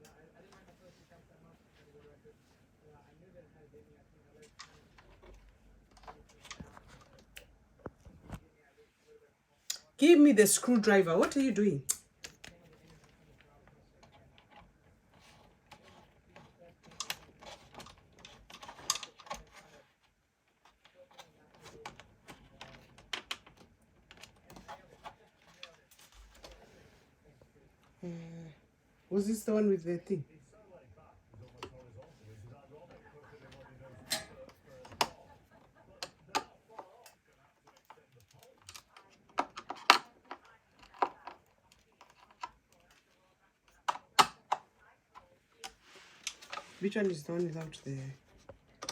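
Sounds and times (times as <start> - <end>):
hand tools and furniture parts clicking: 14.0 - 26.6, 36.0 - 43.0, 43.7 - 48.9
furniture parts clicking and knocking: 20.6 - 26.7.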